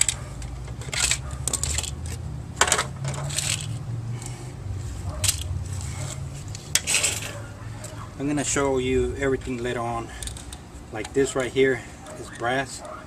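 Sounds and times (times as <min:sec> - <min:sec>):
small metal parts clinking: 0:00.0 - 0:03.8, 0:05.2 - 0:05.6, 0:06.7 - 0:07.4.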